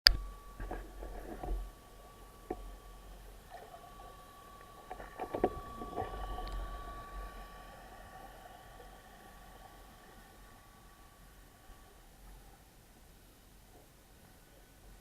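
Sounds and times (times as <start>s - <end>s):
low underwater rumble: 0.1s - 14.2s
thin underwater tone: 0.1s - 15.0s
underwater clicks and knocks: 2.4s - 7.4s.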